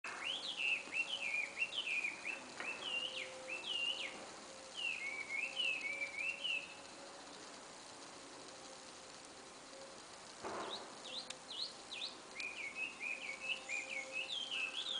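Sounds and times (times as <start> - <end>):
bird whistling: 0.1 - 6.9, 10.6 - 14.9.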